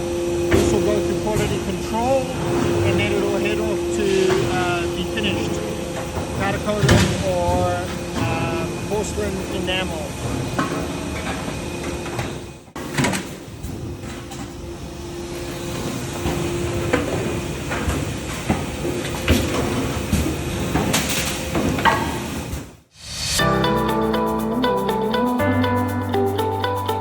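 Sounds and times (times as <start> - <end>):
steady machine hum: 0.0 - 12.8.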